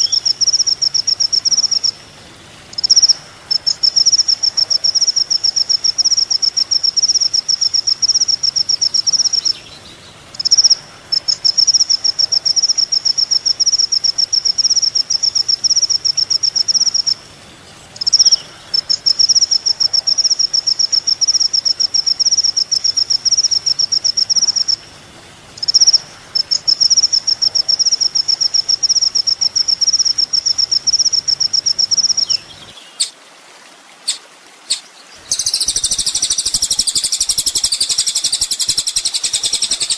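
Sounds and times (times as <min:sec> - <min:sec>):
bird chirps: 0:00.0 - 0:01.9, 0:17.9 - 0:19.6, 0:31.8 - 0:33.2, 0:34.0 - 0:39.9
songbird trill: 0:00.0 - 0:25.0, 0:25.6 - 0:33.2, 0:34.0 - 0:39.9.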